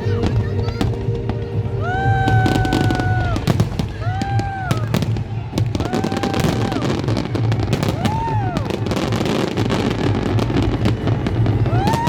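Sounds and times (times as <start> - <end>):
fireworks crackling and banging: 0.0 - 12.0.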